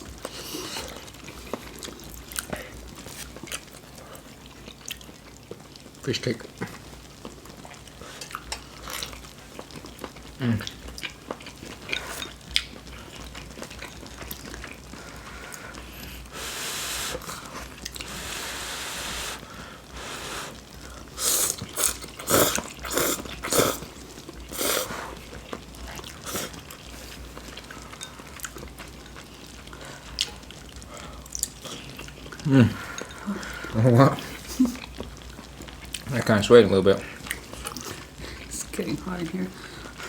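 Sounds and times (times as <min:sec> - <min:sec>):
chewing: 0:00.1 - 0:16.3, 0:17.1 - 0:18.2, 0:20.5 - 0:36.2, 0:37.0 - 0:38.6
slurping: 0:13.7 - 0:27.2.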